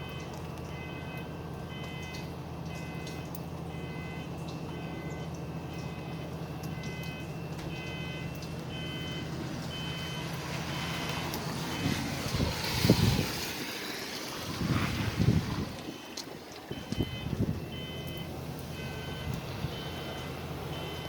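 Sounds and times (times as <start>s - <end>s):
fire alarm sounder beeping: 0.0s - 12.0s, 15.9s - 21.0s
rushing rumbling noise: 9.3s - 16.0s.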